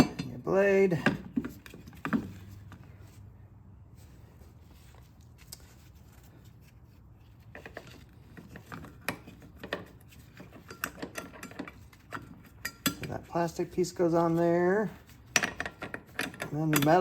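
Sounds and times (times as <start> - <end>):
mower parts clicking and clinking: 0.0 - 2.4, 7.5 - 17.0.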